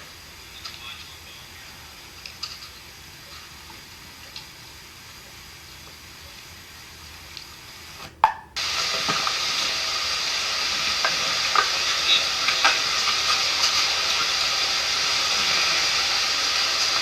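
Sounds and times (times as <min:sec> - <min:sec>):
water rushing over falls: 0:08.6 - 0:17.0.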